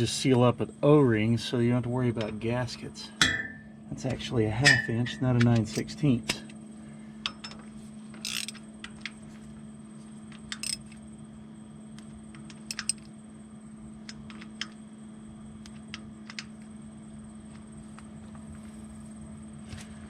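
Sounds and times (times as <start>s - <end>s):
wrench clinking on metal: 4.6s - 5.9s, 8.2s - 8.6s, 10.4s - 10.9s, 12.4s - 13.1s.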